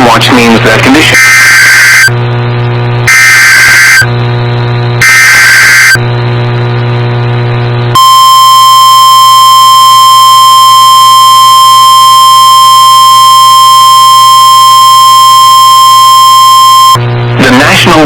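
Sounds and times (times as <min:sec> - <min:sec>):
long steady alarm tone: 0:01.1 - 0:02.2, 0:03.0 - 0:04.2, 0:05.0 - 0:06.2, 0:07.9 - 0:17.1.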